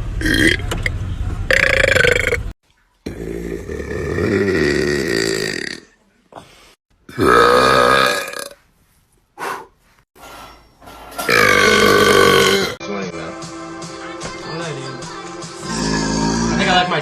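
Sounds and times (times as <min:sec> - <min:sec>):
boys burping: 0:01.5 - 0:06.0, 0:07.1 - 0:08.6, 0:11.3 - 0:12.8, 0:15.6 - 0:16.6.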